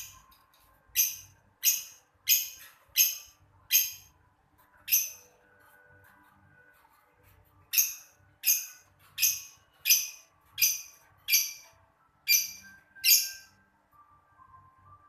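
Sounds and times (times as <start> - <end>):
lovebird shrill calls: 1.0 - 4.1, 7.7 - 11.7, 12.3 - 13.5.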